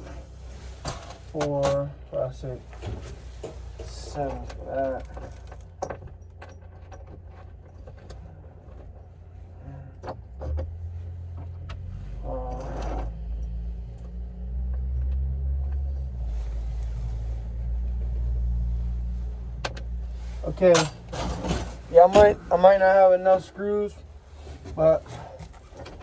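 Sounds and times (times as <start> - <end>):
metallic clinks of loose screws: 12.2 - 14.1
person speaking: 21.8 - 24.1.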